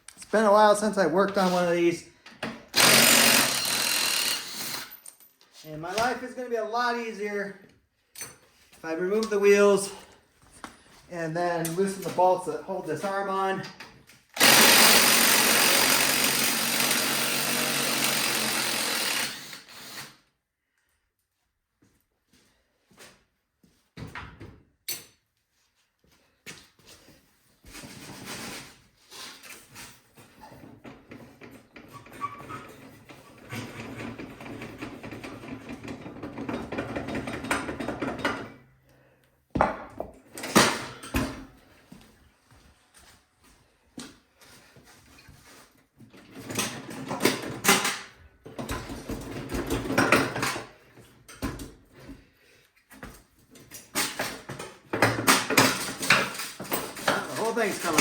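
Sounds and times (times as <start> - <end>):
rapid ratchet clicking: 2.8 - 4.9, 14.4 - 20.0
wrenches clinking on metal: 53.6 - 58.0.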